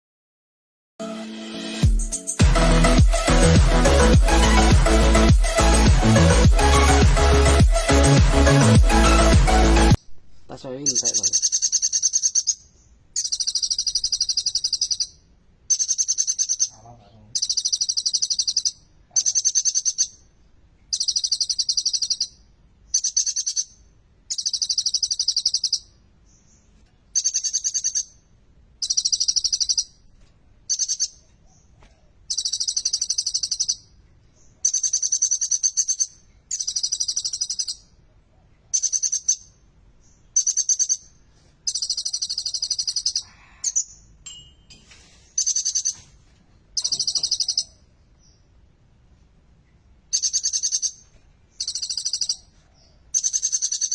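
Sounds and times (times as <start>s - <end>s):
bird singing rapid high trills: 2.0s - 20.3s, 20.9s - 30.0s, 30.7s - 31.7s, 32.3s - 38.0s, 38.7s - 46.1s, 46.8s - 48.5s, 50.1s - 53.9s.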